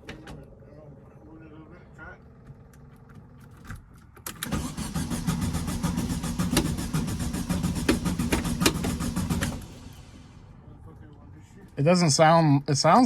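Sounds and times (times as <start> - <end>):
car engine cranking on starter: 4.3 - 10.5.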